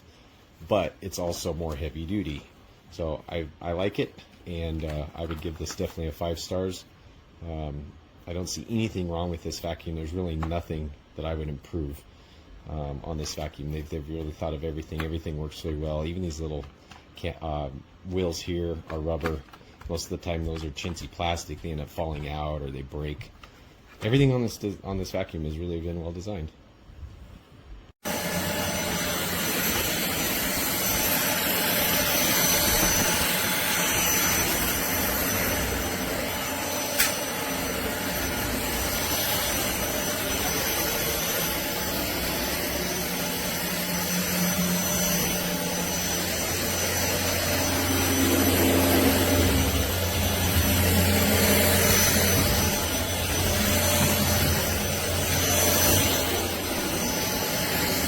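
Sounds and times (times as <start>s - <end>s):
stick vacuum running: 28.0s - 58.0s.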